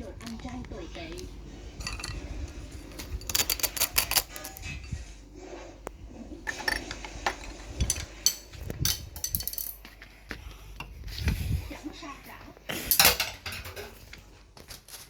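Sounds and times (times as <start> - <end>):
utensils clinking against dishes: 0.6 - 5.2, 6.4 - 10.1, 12.7 - 14.2.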